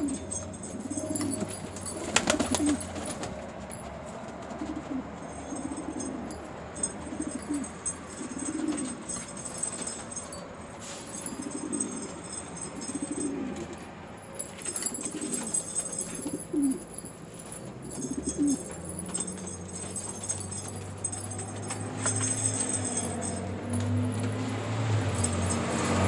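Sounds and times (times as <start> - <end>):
pigeons cooing: 0.0 - 3.0, 4.5 - 9.2, 11.3 - 13.8, 14.7 - 16.9, 17.9 - 18.8.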